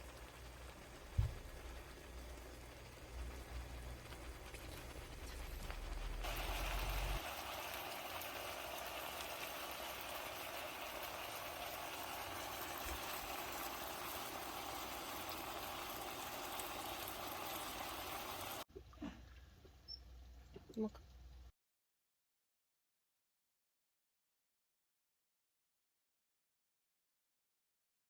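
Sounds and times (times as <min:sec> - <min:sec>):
ribs sizzling on grill: 0:00.0 - 0:18.6.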